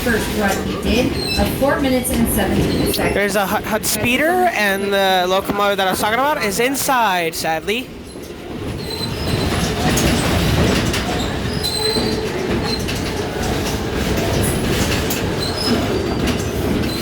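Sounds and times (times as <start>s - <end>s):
train wheels rumbling on rails: 0.0s - 17.0s
wheel squeals: 8.0s - 17.0s.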